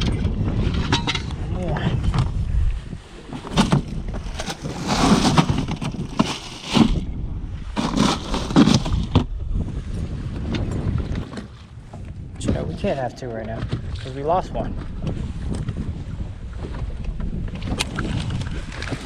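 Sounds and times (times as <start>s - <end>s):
choppy water: 0.0s - 19.0s
wind buffeting microphone: 0.0s - 19.0s
rustling: 3.1s - 7.0s, 7.8s - 9.1s
sharp knocks and bumps: 3.4s - 7.0s.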